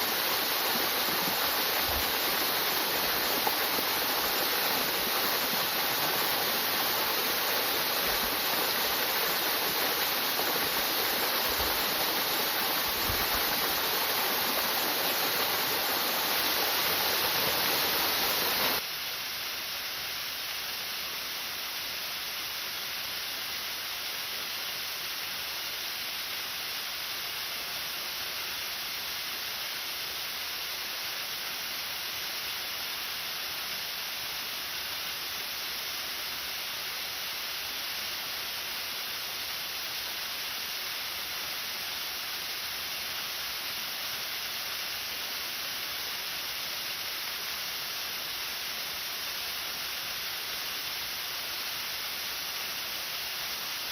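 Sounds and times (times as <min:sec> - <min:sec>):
waterfall roaring: 0:00.0 - 0:18.8.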